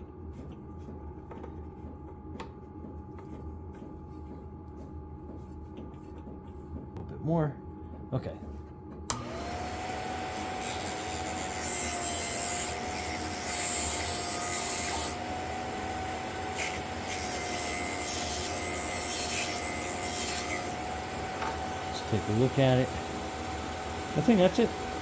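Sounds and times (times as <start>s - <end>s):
drill bit grinding on wheel: 9.1s - 23.3s
sharpener motor humming: 9.1s - 25.0s.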